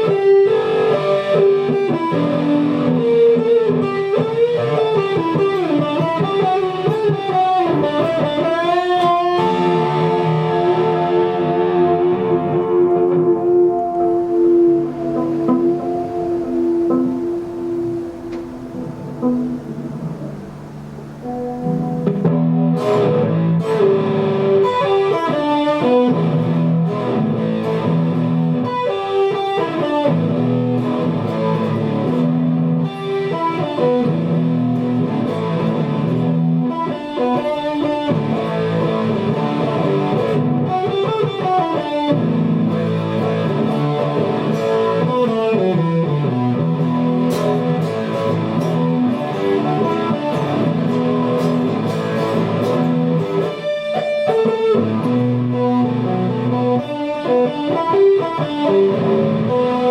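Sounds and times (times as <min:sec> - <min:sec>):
guitar music: 0:00.0 - 0:59.9.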